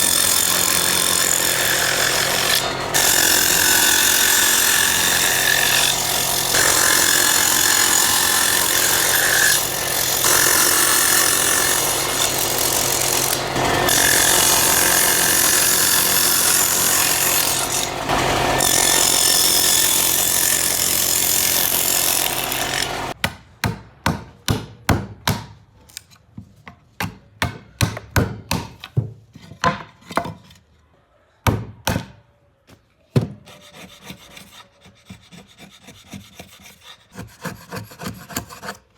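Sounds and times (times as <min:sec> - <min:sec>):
power tool cutting wood: 0:00.0 - 0:23.2.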